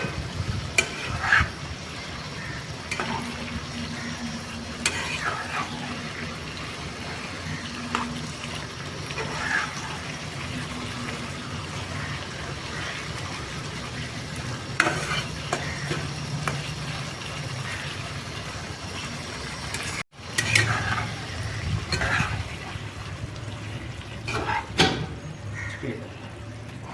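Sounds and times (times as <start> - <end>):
spoon scraping and knocking pan: 0.0 - 1.5, 14.8 - 16.7
curry sizzling in a pan: 0.0 - 26.7.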